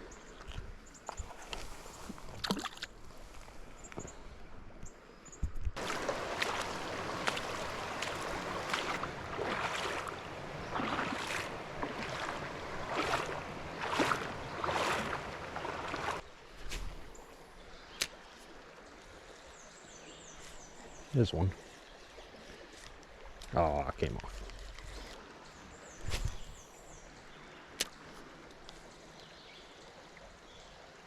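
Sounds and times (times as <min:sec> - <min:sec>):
legs wading through water: 0:00.2 - 0:04.0, 0:05.8 - 0:23.4.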